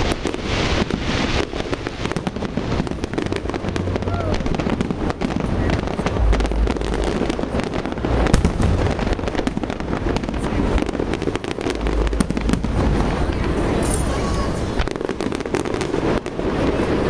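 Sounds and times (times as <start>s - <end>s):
deep fireworks booms: 0.0s - 17.0s
fireworks bangs and crackles: 0.0s - 17.0s.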